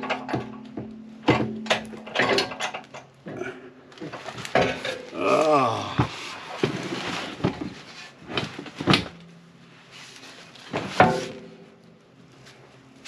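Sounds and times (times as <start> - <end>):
bumper clunking against mounts: 0.0 - 3.5.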